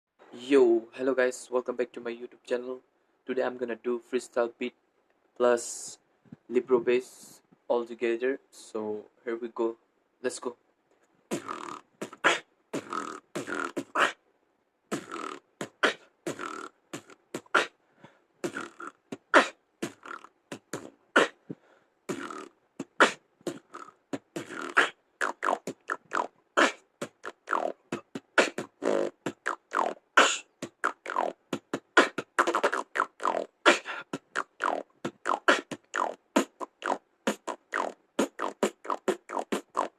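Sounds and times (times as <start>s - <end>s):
person beatboxing: 11.3s - 14.2s, 14.9s - 17.8s, 18.4s - 39.9s.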